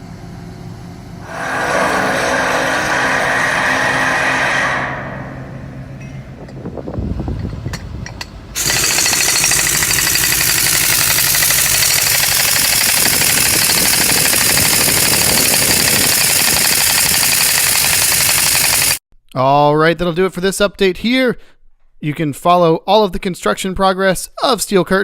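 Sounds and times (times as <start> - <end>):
low rumble: 1.1 - 7.9
construction equipment hammering: 7.7 - 19.0.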